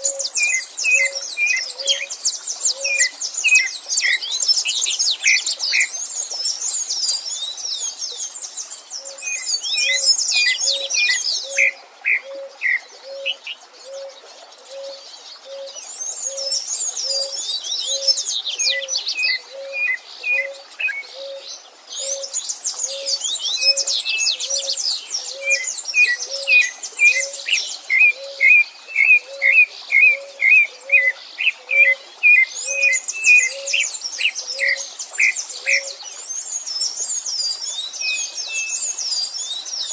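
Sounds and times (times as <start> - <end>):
birds twittering: 0.0 - 39.9.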